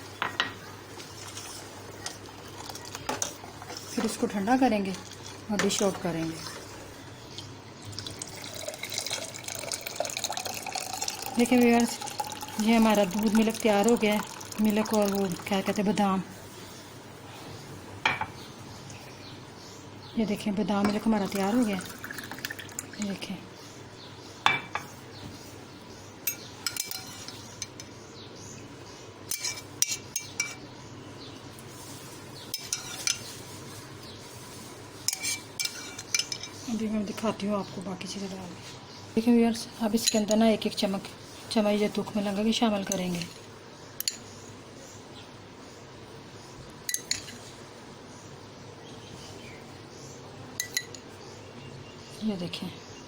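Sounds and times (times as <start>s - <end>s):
metal spoon clinking on pot: 26.2s - 27.9s, 29.3s - 30.6s, 32.5s - 33.3s, 35.1s - 36.6s, 46.9s - 47.4s, 50.6s - 51.0s.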